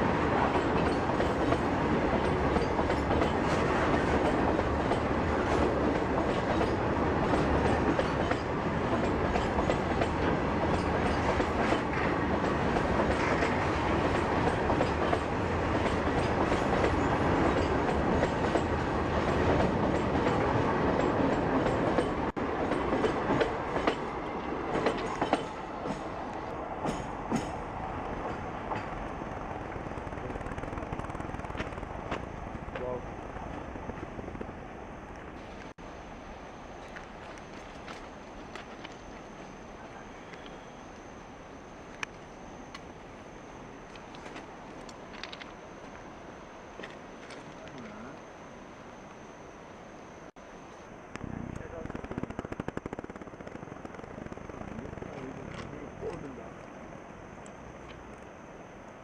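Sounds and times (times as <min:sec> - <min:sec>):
train wheels clattering: 0:00.3 - 0:34.6.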